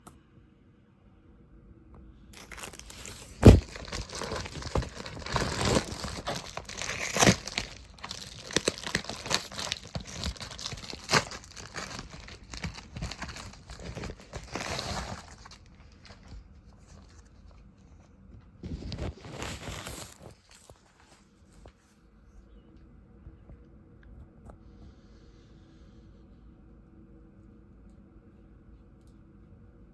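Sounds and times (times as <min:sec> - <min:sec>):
packaging crinkling and tearing: 0:02.4 - 0:17.7, 0:18.6 - 0:21.6.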